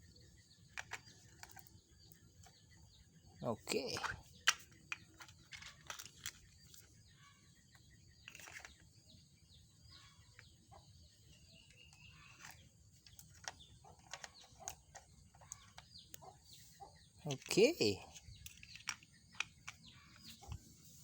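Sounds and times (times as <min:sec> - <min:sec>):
birds chirping: 0:00.0 - 0:21.0
plastic toy pieces clicking: 0:00.6 - 0:01.8, 0:03.8 - 0:06.9, 0:08.2 - 0:08.9, 0:11.8 - 0:16.0, 0:17.3 - 0:20.3.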